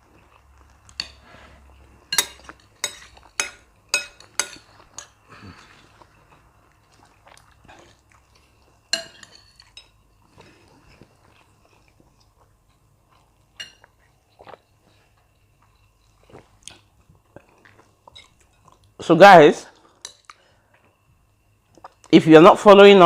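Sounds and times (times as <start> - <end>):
soft chewing: 0.0 - 19.0, 19.7 - 22.1
cutlery clinking against plate: 2.1 - 5.2, 8.9 - 10.0, 13.6 - 13.9.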